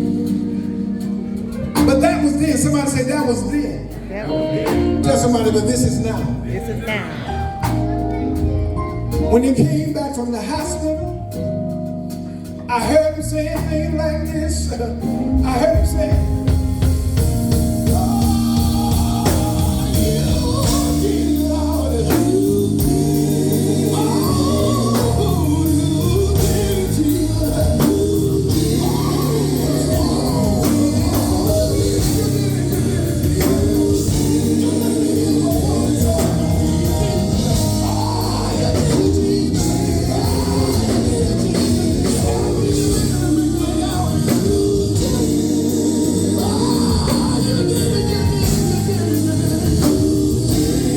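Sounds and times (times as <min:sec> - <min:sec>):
bass notes: 0:00.0 - 0:50.9
gospel group singing: 0:00.0 - 0:50.9
drum beat: 0:15.5 - 0:50.9.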